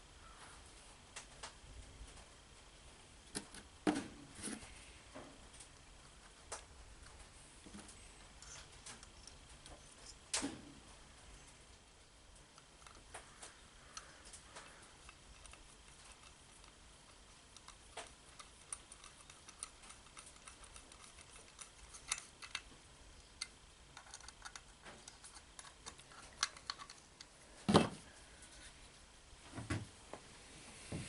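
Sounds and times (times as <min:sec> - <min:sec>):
small metal parts clicking: 0:12.5 - 0:27.3.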